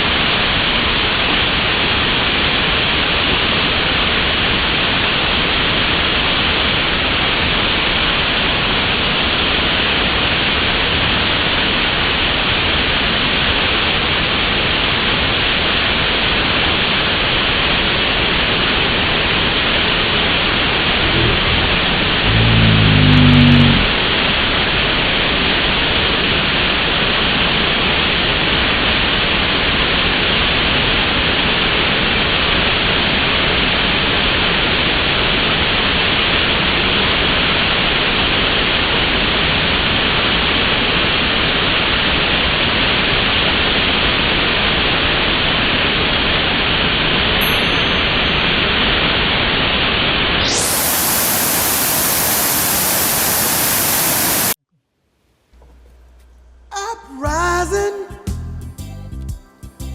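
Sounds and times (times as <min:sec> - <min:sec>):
waterfall rushing: 0:50.4 - 0:54.6.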